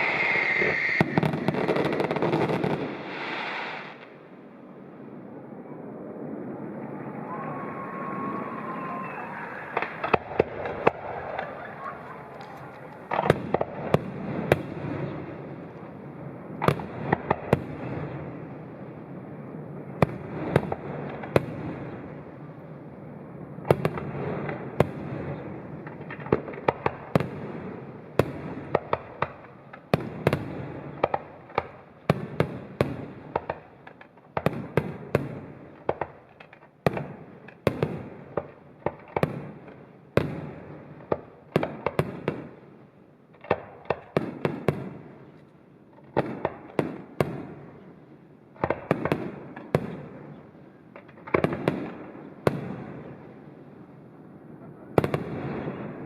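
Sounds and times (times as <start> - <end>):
firework shells bursting: 0.0 - 4.0, 8.8 - 13.8
fireworks crackling: 0.0 - 4.5, 6.6 - 18.8.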